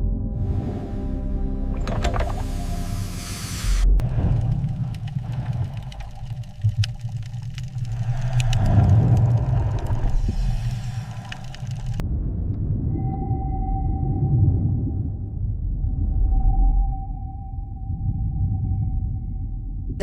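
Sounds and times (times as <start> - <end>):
sharp clicks and ticks: 4.0 - 12.0.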